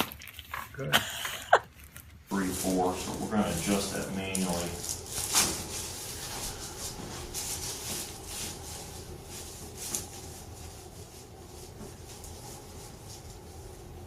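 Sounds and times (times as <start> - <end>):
clothing rubbing on table padding: 4.7 - 14.0.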